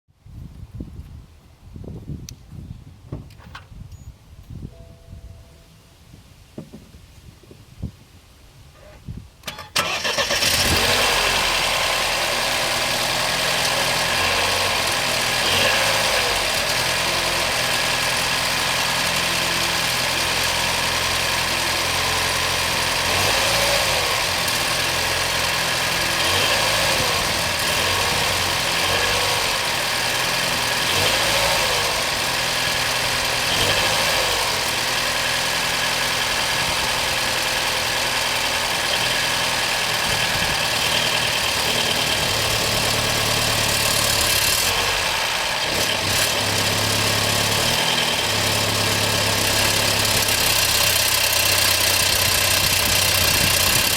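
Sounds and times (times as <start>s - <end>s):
car engine idling: 9.7s - 53.9s.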